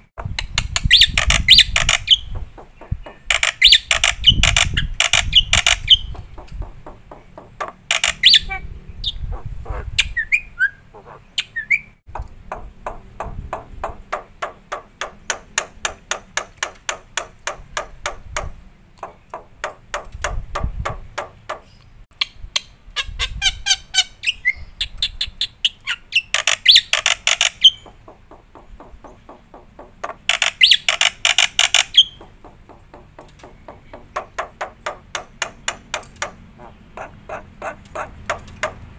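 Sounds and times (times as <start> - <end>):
sharp clicks: 0.4 - 8.4, 12.1 - 22.7, 26.3 - 38.9
bird harsh chattering calls: 0.7 - 12.7, 23.0 - 38.9.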